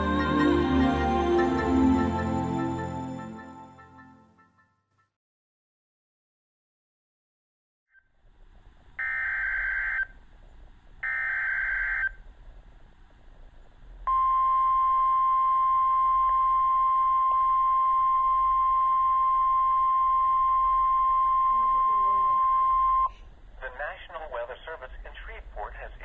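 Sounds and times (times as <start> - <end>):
steady alarm tone: 9.0 - 10.1, 11.0 - 12.2, 14.1 - 23.1.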